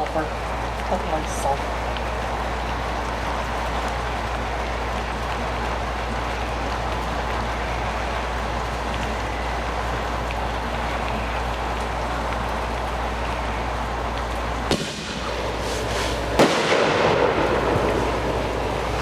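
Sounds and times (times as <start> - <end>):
steady rain: 0.0 - 19.0
firework bangs: 14.6 - 19.0.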